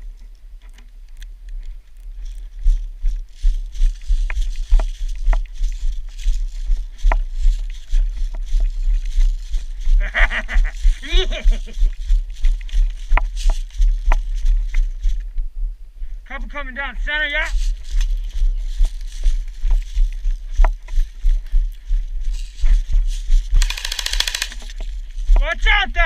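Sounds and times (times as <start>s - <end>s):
footsteps on snow: 1.6s - 15.4s, 17.0s - 26.0s
sharp clicks: 23.6s - 24.8s.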